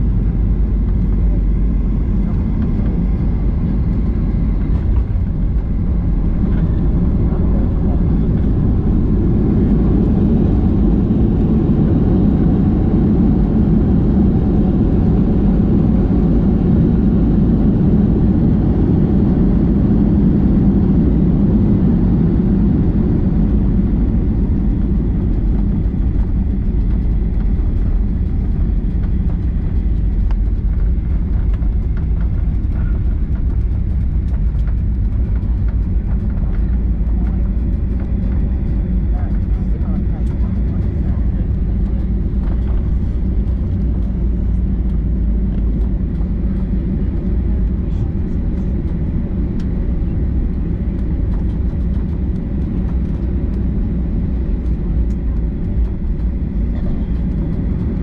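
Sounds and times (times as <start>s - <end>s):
airplane cabin engine roar: 0.0s - 58.0s.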